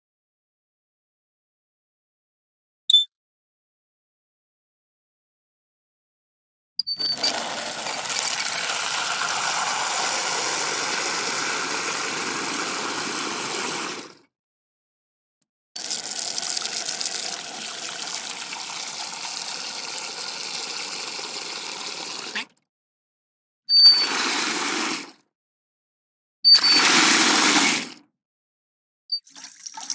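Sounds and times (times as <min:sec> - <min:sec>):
high faucet squeak: 0:06.8 - 0:14.0, 0:23.7 - 0:24.8, 0:26.5 - 0:27.6
water gushing from faucet: 0:07.0 - 0:14.2, 0:15.8 - 0:22.5, 0:23.7 - 0:25.2, 0:26.5 - 0:28.0, 0:29.2 - 0:29.9.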